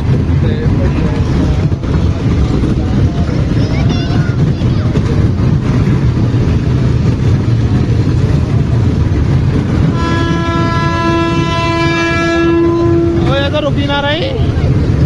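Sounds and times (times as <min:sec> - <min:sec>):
low machinery rumble: 0:00.0 - 0:15.0
high horn: 0:09.9 - 0:13.6.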